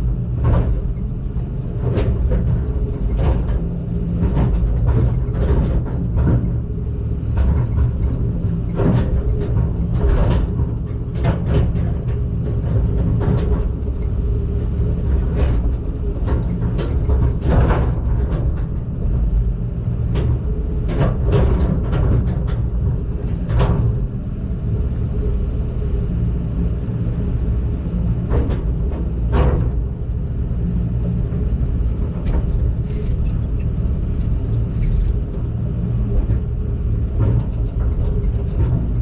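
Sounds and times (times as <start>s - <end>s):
heavy diesel engine running: 0.0s - 39.0s
metallic clanks and knocks: 31.8s - 35.4s.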